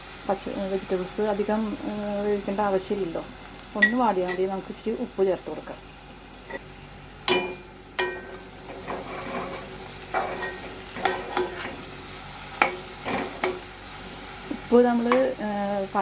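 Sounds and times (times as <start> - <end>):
vegetables frying in oil: 0.0 - 16.0
spoon knocking against pan: 7.3 - 8.4.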